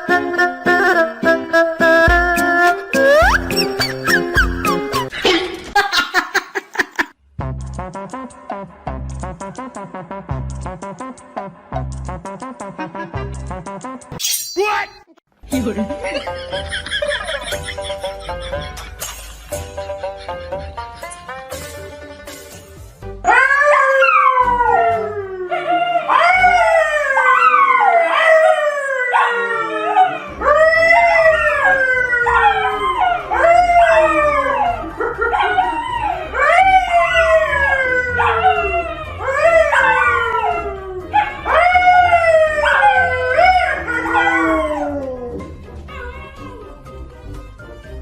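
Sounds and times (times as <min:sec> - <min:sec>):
pet animal howling: 0:23.3 - 0:46.9.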